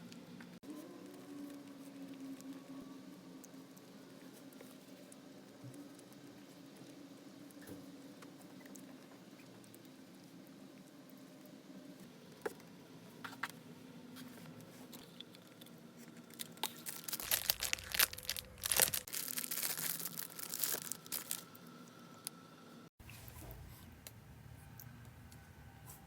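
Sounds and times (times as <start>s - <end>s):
plastic wrapper tearing and crinkling: 16.2s - 21.6s.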